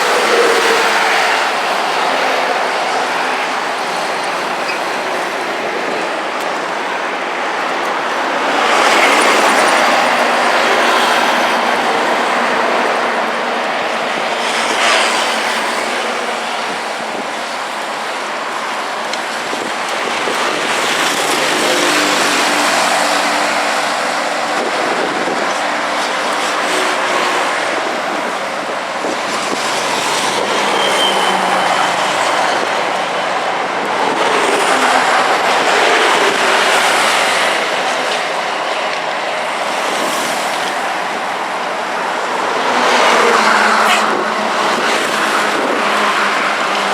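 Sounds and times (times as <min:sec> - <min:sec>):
heavy street traffic: 0:00.0 - 0:46.9
high squeal: 0:30.2 - 0:33.2.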